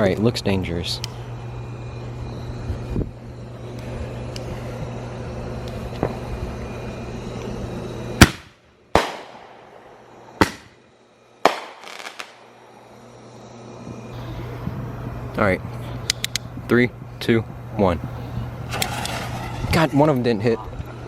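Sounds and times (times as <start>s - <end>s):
low hum: 0.0s - 21.0s
firework crackle: 3.7s - 10.8s, 11.4s - 12.6s, 18.6s - 19.9s
firework bangs: 5.9s - 6.3s, 8.2s - 10.8s, 11.4s - 12.4s, 18.7s - 19.7s.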